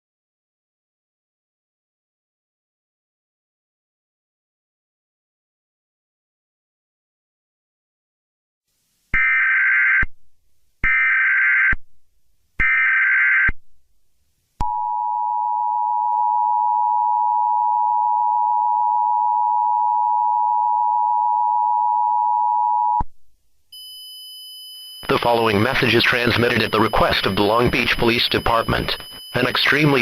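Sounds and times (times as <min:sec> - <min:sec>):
two-tone attention signal: 0:24.8 - 0:30.0
screeching data bursts: 0:25.0 - 0:30.0.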